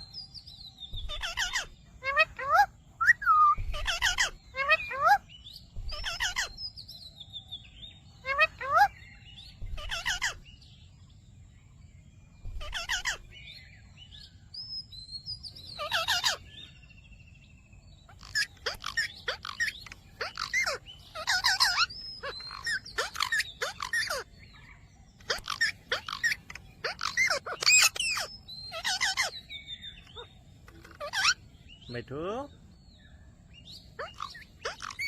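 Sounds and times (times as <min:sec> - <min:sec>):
parrot raspy chatter: 0:01.0 - 0:06.6, 0:08.2 - 0:09.0, 0:09.6 - 0:10.4, 0:12.6 - 0:13.3, 0:15.8 - 0:16.5, 0:18.1 - 0:24.3, 0:25.2 - 0:31.4, 0:34.0 - 0:35.0.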